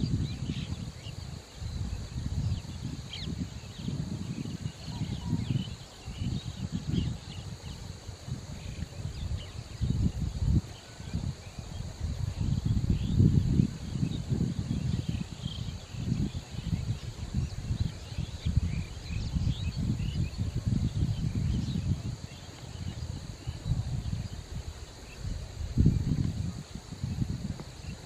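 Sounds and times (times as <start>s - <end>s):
insect drone: 0.0s - 28.0s.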